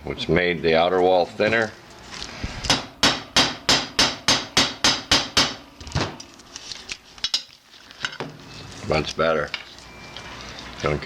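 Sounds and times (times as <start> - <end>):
hammer striking grommet tool: 2.7 - 5.6.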